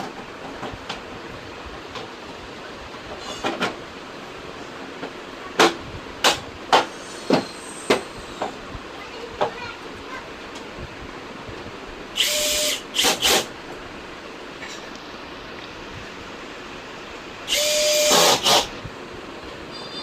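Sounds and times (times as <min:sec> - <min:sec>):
power tool whining with hiss: 0:06.8 - 0:08.6, 0:12.2 - 0:13.5, 0:17.5 - 0:18.8.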